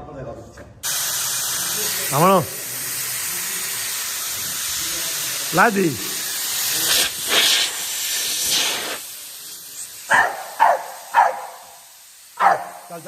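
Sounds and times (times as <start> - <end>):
steady hiss: 0.8 - 13.0
dog barking: 10.1 - 11.7, 12.4 - 12.8.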